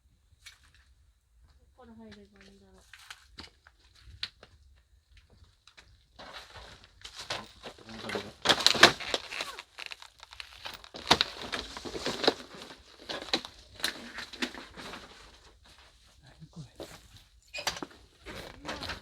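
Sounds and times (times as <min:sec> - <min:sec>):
debris crunching and rustling: 0:05.4 - 0:16.1.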